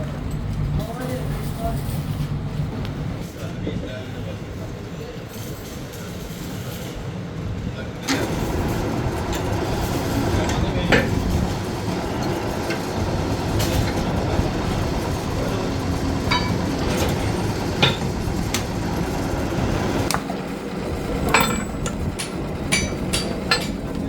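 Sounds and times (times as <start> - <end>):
steady machine noise: 8.1 - 24.0
metallic clinks and knocks: 16.3 - 17.1.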